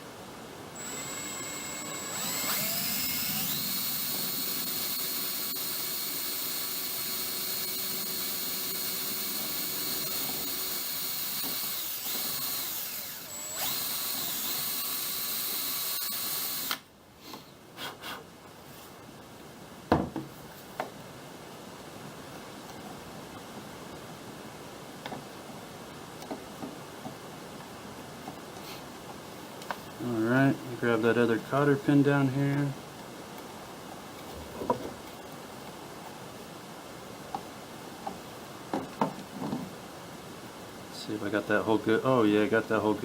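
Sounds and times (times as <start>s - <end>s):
cordless drill whine: 0.8s - 16.8s.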